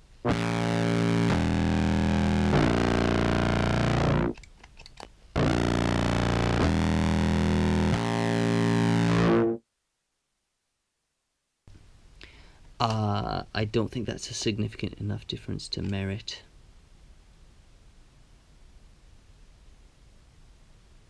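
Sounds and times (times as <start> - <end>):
distorted contrabass clarinet notes: 0.2 - 4.4, 5.4 - 9.6.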